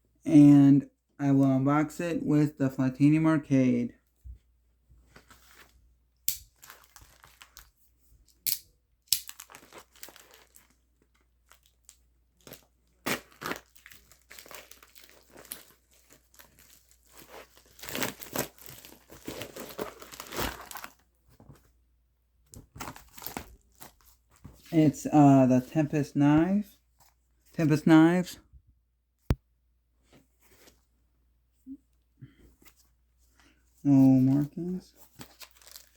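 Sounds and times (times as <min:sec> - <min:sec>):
wrapping crinkling and tearing: 0:06.4 - 0:07.8, 0:09.2 - 0:21.0, 0:22.8 - 0:24.2, 0:34.1 - 0:35.9.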